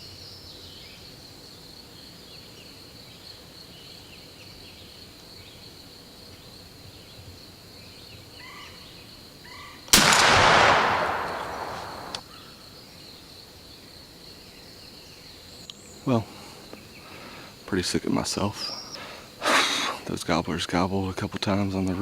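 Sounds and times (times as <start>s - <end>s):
high insect drone: 0.0s - 22.0s
shotgun blast with echo: 9.9s - 12.3s.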